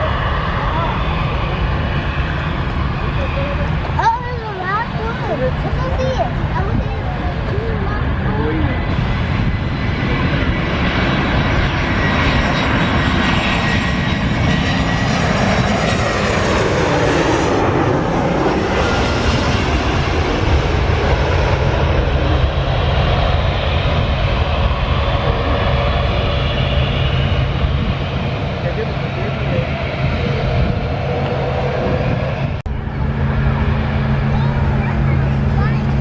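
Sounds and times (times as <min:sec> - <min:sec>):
jet airliner flying past: 0:00.0 - 0:36.0.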